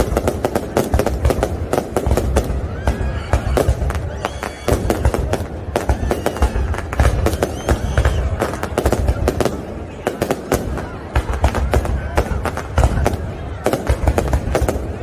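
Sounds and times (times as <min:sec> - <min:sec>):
firework bangs and crackles: 0:00.0 - 0:15.0
firework whistling: 0:00.0 - 0:15.0.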